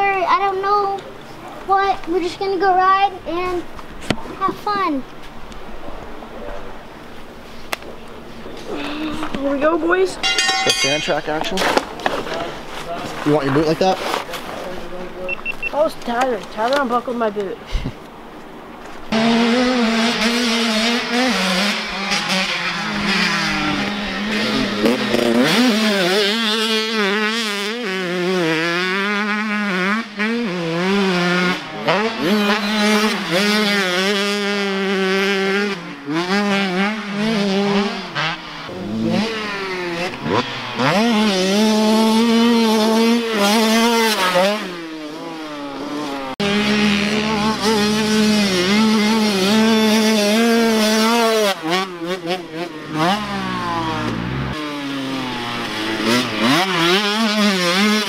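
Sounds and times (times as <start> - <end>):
dirt bike engine revving: 19.1 - 58.0.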